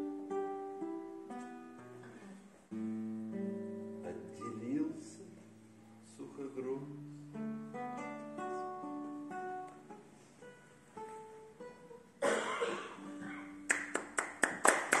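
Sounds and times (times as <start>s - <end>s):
plucked acoustic guitar: 0.0s - 14.2s
hand claps: 13.6s - 15.0s.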